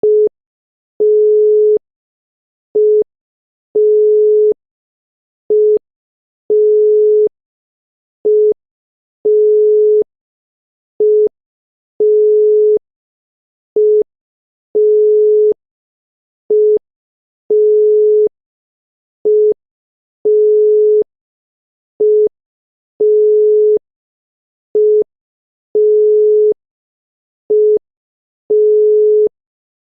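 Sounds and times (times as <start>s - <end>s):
telephone dial tone: 0.0s - 0.3s, 1.0s - 1.8s, 3.8s - 4.6s, 6.5s - 7.3s, 9.3s - 10.1s, 11.0s - 11.3s, 12.0s - 12.8s, 14.8s - 15.6s, 17.5s - 18.3s, 19.3s - 19.6s, 20.3s - 21.1s, 22.0s - 22.3s, 23.0s - 23.8s, 24.8s - 25.1s, 25.8s - 26.6s, 27.5s - 27.8s, 28.5s - 29.3s.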